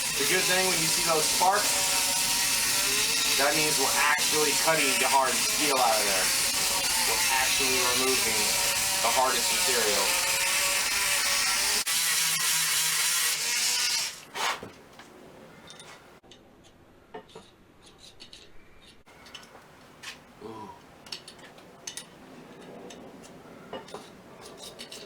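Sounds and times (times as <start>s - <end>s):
rotary tool grinding steel: 0.0s - 14.3s, 23.8s - 25.0s.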